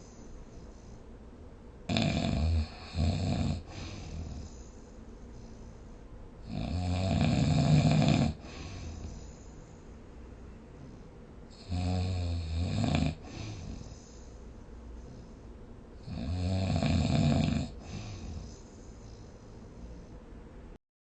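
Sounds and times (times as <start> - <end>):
soft breath: 0.0 - 1.5, 3.6 - 6.4, 8.3 - 11.6, 13.2 - 16.0, 17.7 - 20.7
person snoring: 1.9 - 4.6, 6.4 - 9.3, 10.8 - 14.1, 16.0 - 20.1.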